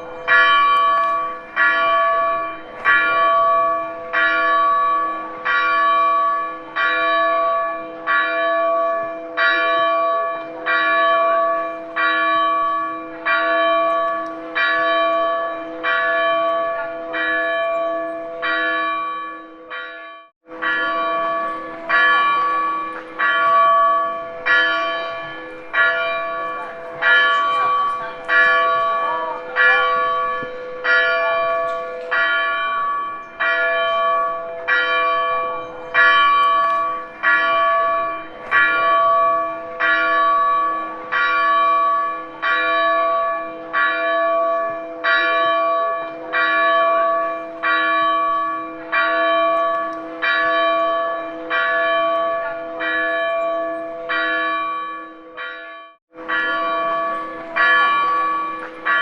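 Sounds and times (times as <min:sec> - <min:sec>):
church bell tolling: 0:00.0 - 0:59.0.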